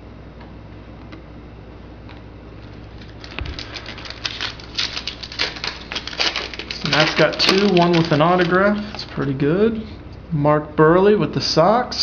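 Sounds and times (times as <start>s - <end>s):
low steady hum: 0.0s - 12.0s
foil pack crinkling: 2.6s - 9.8s.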